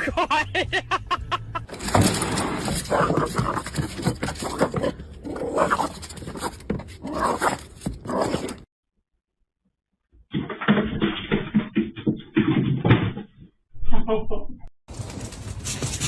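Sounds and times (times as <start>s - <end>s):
dog barking roughly: 1.8s - 8.6s.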